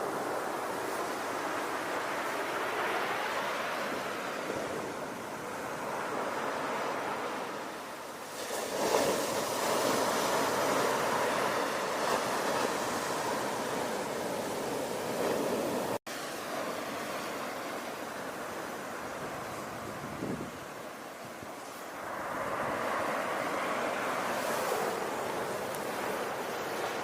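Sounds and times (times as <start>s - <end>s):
ocean surf washing: 0.0s - 27.0s
wave breaking: 0.1s - 18.0s.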